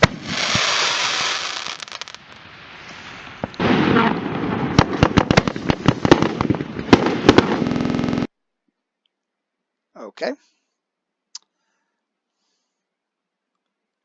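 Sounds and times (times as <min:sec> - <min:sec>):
crackling pops and bangs: 0:00.0 - 0:08.3
firework pop and hiss: 0:04.8 - 0:07.8.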